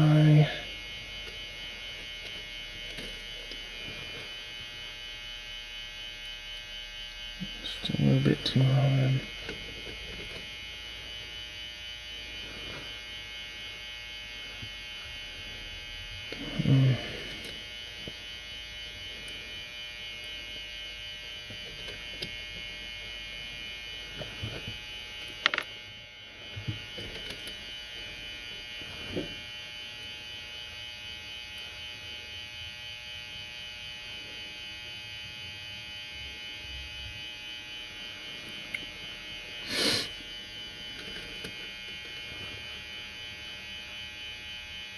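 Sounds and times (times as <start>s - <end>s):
steady electrical buzz: 0.0s - 44.9s.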